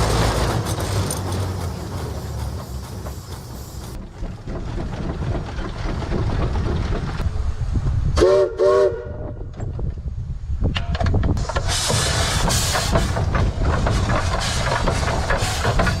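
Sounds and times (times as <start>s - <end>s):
steam engine running: 0.0s - 7.2s, 11.4s - 16.0s
steam whistle blasts: 8.2s - 9.4s.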